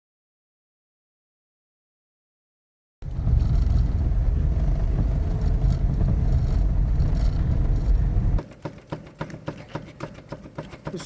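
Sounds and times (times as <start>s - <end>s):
road and wind noise rumble: 3.0s - 8.4s.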